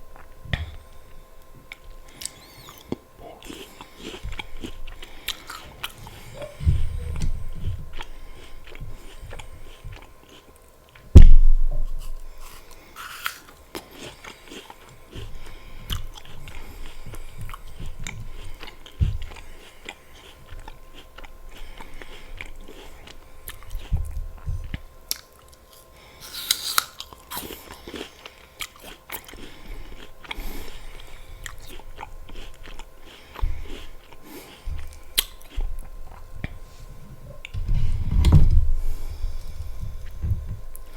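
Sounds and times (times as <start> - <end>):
crunching and chewing apple: 0.0 - 40.9
sharp low thump: 11.2 - 12.1.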